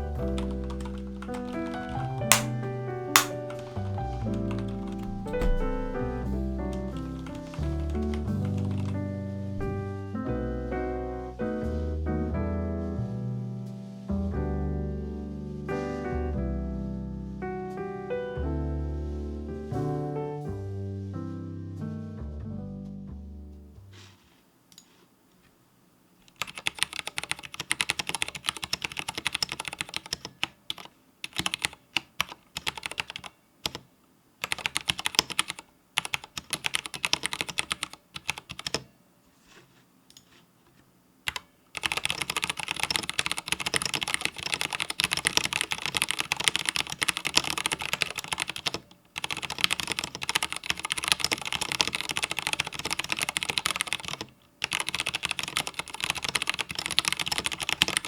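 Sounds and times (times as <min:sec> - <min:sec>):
mechanical keyboard typing: 0:00.0 - 0:09.1, 0:26.3 - 0:38.9, 0:41.3 - 0:58.0.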